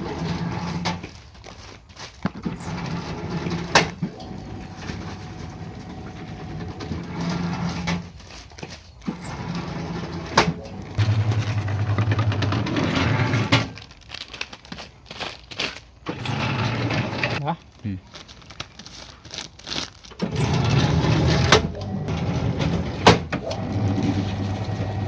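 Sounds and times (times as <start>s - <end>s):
press machine motor hum: 9.2s - 13.7s, 20.2s - 25.0s.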